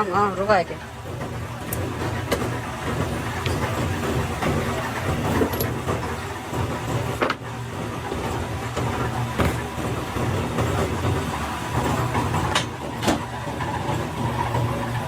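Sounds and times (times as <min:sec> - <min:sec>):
machine humming: 0:00.0 - 0:15.0
sharp clicks and knocks: 0:01.2 - 0:07.4, 0:12.1 - 0:13.3.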